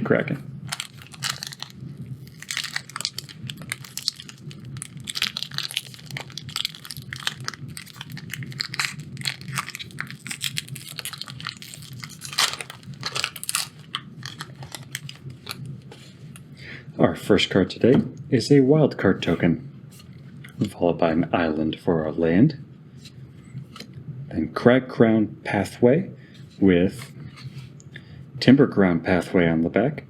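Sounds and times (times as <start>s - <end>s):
foil wrapper tearing and crinkling: 0.7s - 15.7s.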